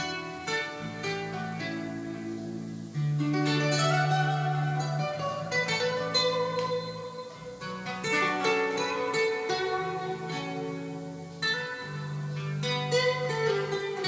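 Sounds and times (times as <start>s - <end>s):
plucked string music with bass: 0.0s - 14.0s.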